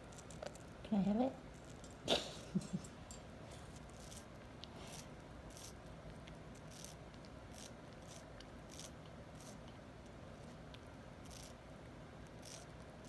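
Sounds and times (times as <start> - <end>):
bird crunching watermelon: 0.0 - 2.0, 3.7 - 11.6.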